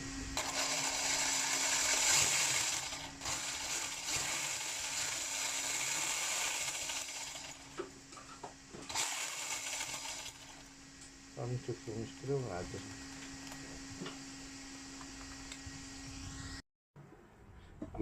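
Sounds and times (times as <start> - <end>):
toy car motor whirring: 0.4 - 7.7, 8.8 - 10.7.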